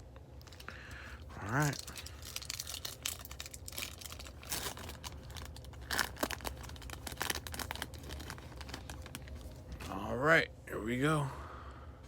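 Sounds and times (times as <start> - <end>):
foil wrapper tearing and crinkling: 0.4 - 9.8.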